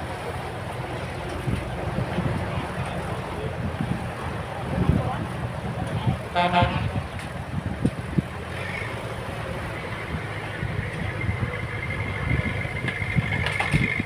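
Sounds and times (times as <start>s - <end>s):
heavy machine engine running: 7.1s - 14.0s.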